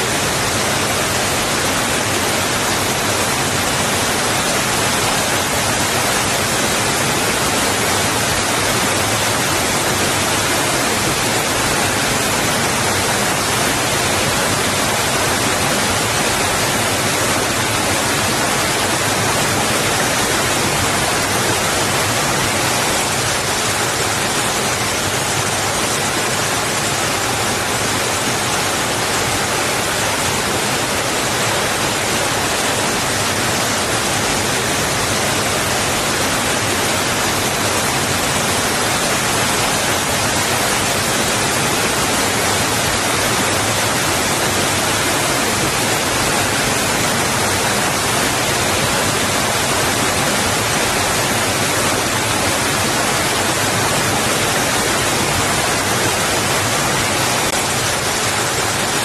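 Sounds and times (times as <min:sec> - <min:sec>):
water rushing over rocks: 0:00.0 - 0:59.0.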